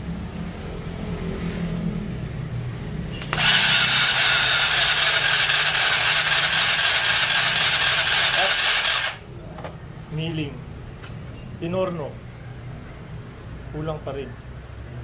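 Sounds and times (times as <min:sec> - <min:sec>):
power tool grinding: 0:03.3 - 0:09.2.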